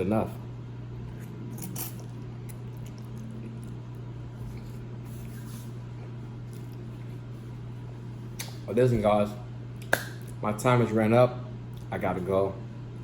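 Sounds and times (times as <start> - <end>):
steady low hum: 0.0 - 13.0
person chewing food: 1.1 - 7.6.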